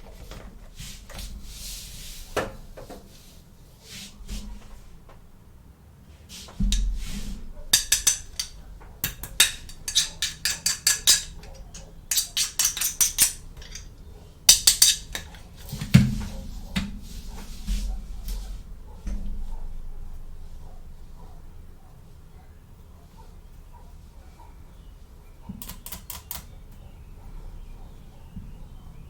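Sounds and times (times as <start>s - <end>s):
plastic toy pieces clicking: 7.8s - 13.9s.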